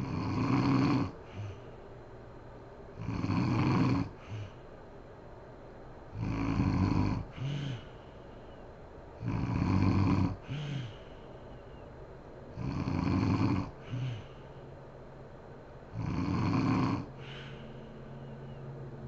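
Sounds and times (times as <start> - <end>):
woman snoring: 0.0 - 1.7, 3.0 - 4.6, 6.2 - 8.0, 9.2 - 11.2, 12.6 - 14.5, 15.9 - 17.9.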